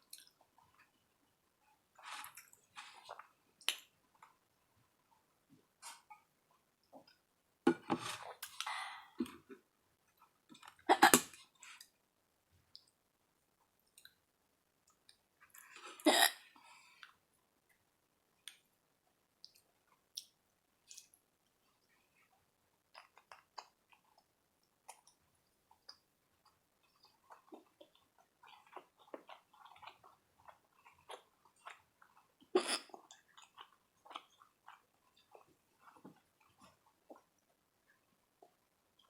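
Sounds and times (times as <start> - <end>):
person chewing: 22.9 - 37.4.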